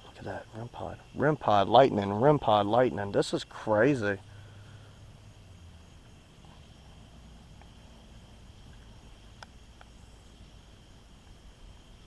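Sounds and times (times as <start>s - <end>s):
crickets chirring: 0.0s - 12.0s
soft hiss: 0.0s - 12.0s
light ticks: 8.7s - 10.0s.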